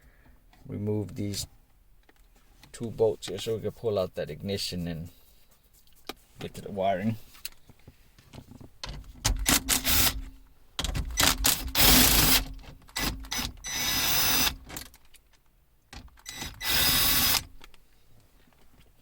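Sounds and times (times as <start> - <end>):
cordless power driver running: 11.7 - 12.4, 16.4 - 17.5.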